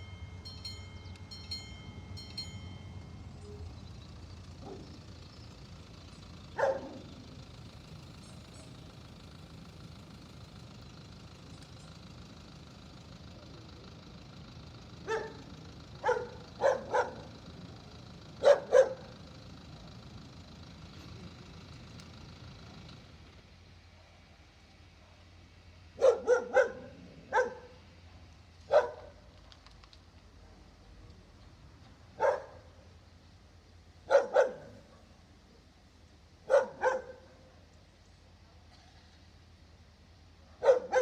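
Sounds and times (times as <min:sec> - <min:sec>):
dog barking: 0:04.6 - 0:04.9, 0:06.6 - 0:07.1, 0:15.0 - 0:17.3, 0:18.4 - 0:19.2, 0:26.0 - 0:27.8, 0:28.7 - 0:29.2, 0:32.2 - 0:32.7, 0:34.1 - 0:35.1, 0:36.5 - 0:37.4, 0:40.5 - 0:41.0.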